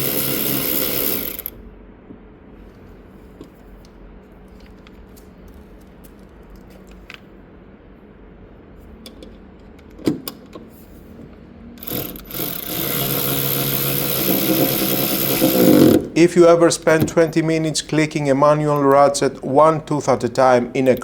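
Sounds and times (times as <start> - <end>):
steady low hum: 0.0 - 10.0, 10.6 - 21.0
tools clicking: 11.8 - 16.1
tools rattling: 11.8 - 16.2.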